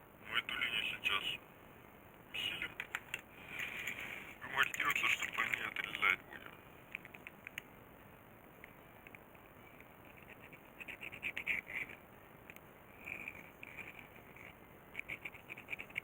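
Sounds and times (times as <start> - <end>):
scratchy strokes on circuit board: 10.1 - 12.0, 13.0 - 16.0.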